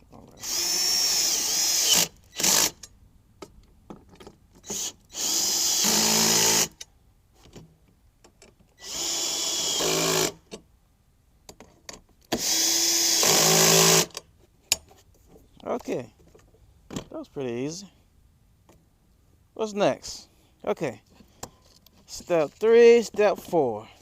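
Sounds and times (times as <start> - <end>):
power drill driving bolts: 0.4 - 2.9, 4.6 - 6.9, 8.8 - 10.5, 12.3 - 14.2.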